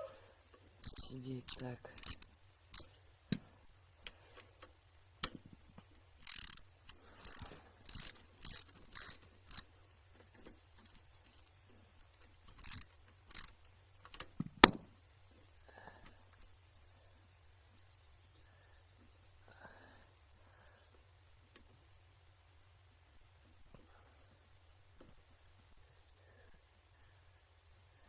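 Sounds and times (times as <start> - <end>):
socket ratchet clicking: 0.8 - 3.0, 5.2 - 14.9
loose hardware clinking: 0.8 - 3.4, 5.2 - 14.9.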